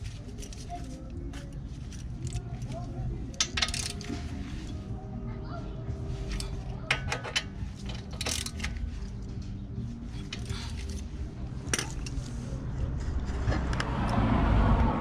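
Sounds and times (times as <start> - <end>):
metallic clinks of tools: 3.3 - 4.3, 6.3 - 9.2.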